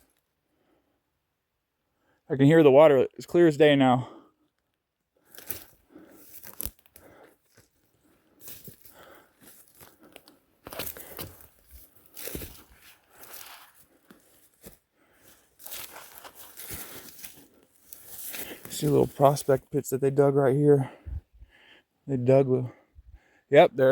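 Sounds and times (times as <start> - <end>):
footsteps crunching through brush: 5.3 - 19.8
twig snapping: 6.3 - 7.0.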